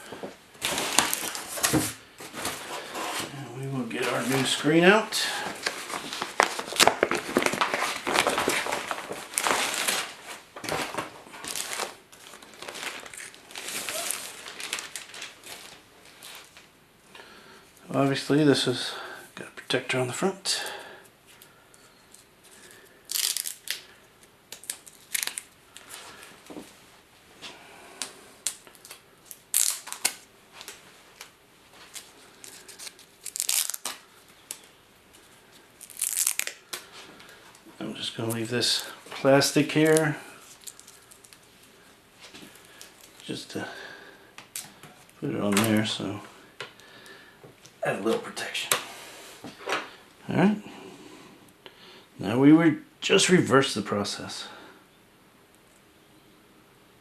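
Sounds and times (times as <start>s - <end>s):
plastic packaging crinkling: 0.6s - 3.0s, 3.8s - 16.7s, 22.2s - 26.6s, 28.4s - 46.1s.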